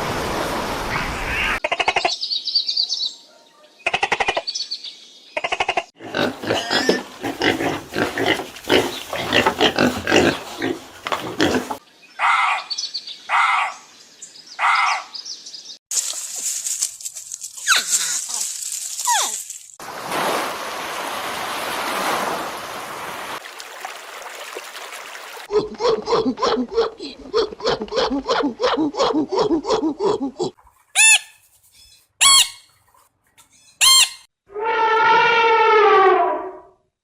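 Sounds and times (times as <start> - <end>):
evenly spaced animal calls: 27.4 - 32.7, 33.4 - 36.7
falling animal cries: 33.8 - 36.7.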